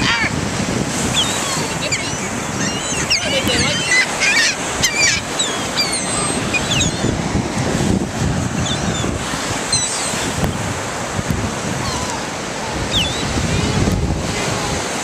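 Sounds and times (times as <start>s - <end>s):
seagulls calling: 0.0s - 0.4s, 1.0s - 7.2s, 8.6s - 10.6s, 11.7s - 13.9s
ocean surf: 0.0s - 15.0s
wind on microphone: 0.0s - 15.0s.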